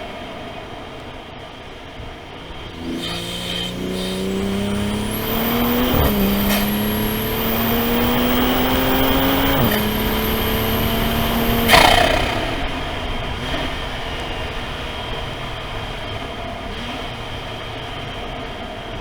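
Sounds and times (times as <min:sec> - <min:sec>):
car engine accelerating hard: 0:02.6 - 0:13.8
short loud engine burst: 0:02.8 - 0:13.0
high whistle: 0:03.1 - 0:12.1.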